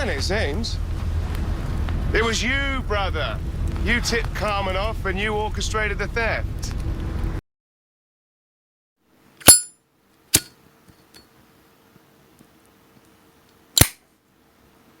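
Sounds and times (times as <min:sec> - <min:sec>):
lighter lid clinking open: 0:09.4 - 0:09.7, 0:13.8 - 0:14.0
lighter wheel strike: 0:09.4 - 0:09.7, 0:10.3 - 0:10.5, 0:13.8 - 0:14.0.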